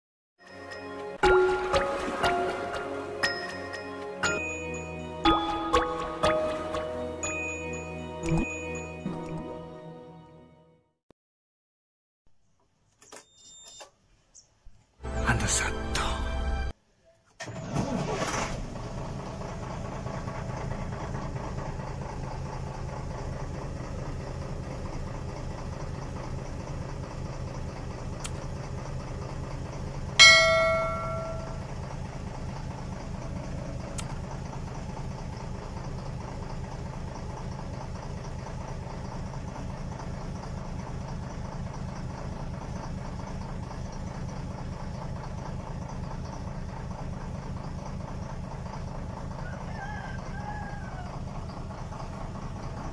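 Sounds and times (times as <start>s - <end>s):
bell strike: 3.3s - 9.1s, 30.2s - 31.8s
engine idling: 17.5s - 52.9s.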